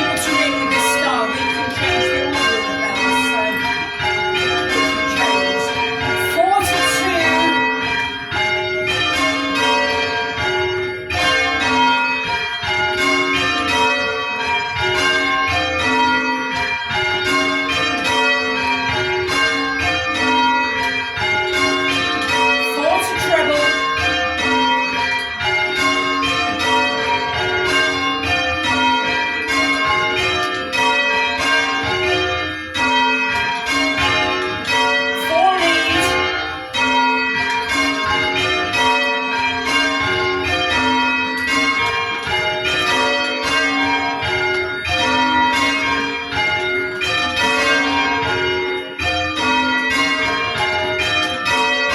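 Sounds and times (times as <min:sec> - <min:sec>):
church bells ringing: 0:00.0 - 0:51.9.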